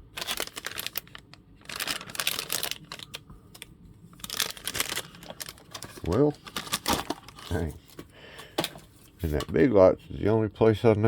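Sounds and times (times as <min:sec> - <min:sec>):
plastic packaging crinkling: 0:00.0 - 0:07.8.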